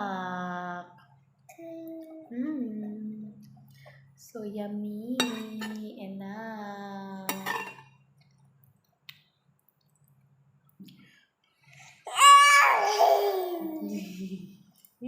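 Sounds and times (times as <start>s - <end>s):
low steady hum: 0.0s - 12.1s
utensil clinking against dish: 5.2s - 5.8s, 7.3s - 7.9s.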